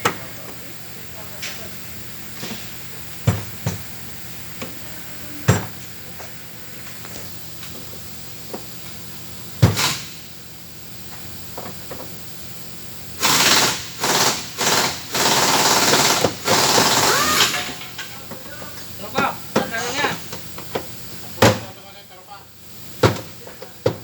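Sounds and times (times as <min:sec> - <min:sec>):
impact wrench rattling: 0:13.2 - 0:18.0.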